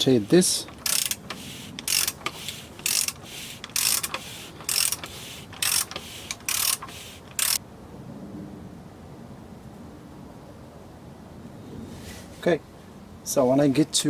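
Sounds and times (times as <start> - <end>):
ratchet wrench clicking: 0.0 - 7.6.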